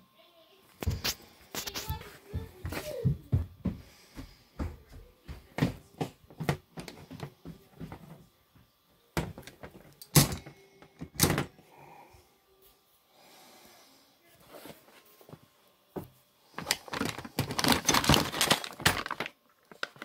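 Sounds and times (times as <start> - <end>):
hard objects knocking and clunking: 9.2 - 11.5, 16.0 - 19.3.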